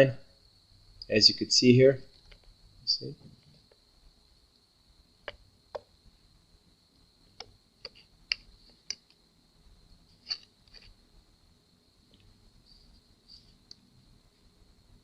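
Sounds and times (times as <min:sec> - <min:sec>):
probe tips clicking on circuit board: 0:05.2 - 0:05.9, 0:07.4 - 0:09.2.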